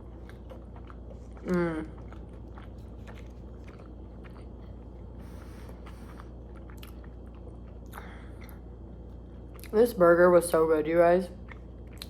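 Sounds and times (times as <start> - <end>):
person chewing food: 0.0 - 9.8, 11.4 - 12.0
faint low hum: 0.0 - 12.0.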